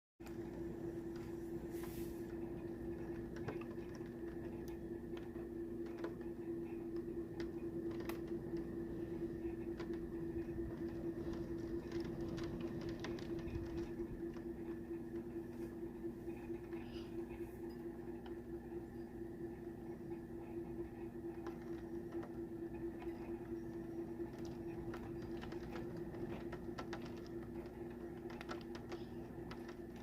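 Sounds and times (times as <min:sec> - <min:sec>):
steady low hum: 0:00.2 - 0:30.0
raindrops tapping: 0:02.6 - 0:15.3, 0:21.2 - 0:30.0.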